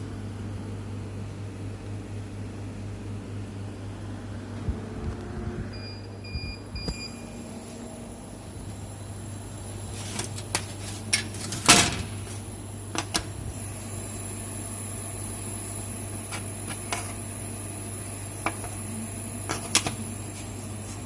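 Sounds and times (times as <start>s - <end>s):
laser cutter humming and whining: 7.1s - 21.0s.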